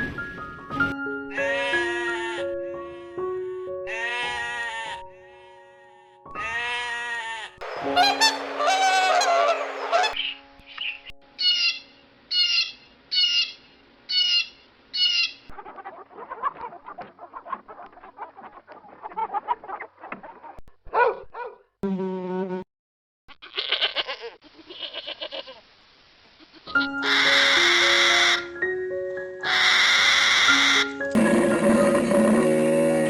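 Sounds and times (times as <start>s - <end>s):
soft background music: 0.0s - 12.4s, 26.7s - 33.0s
bleat-like bird call: 1.3s - 2.4s, 3.9s - 5.0s, 6.4s - 10.2s, 23.4s - 25.6s, 26.5s - 28.5s, 29.4s - 30.8s
harsh honking call: 7.7s - 10.2s.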